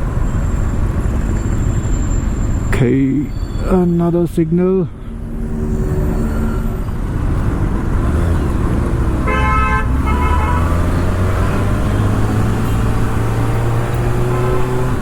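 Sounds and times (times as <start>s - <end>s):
vehicle horn honking: 9.2s - 13.0s.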